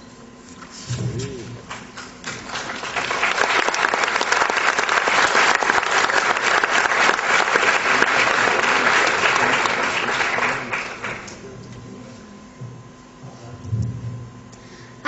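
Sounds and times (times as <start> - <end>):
audience applauding: 1.7 - 11.4.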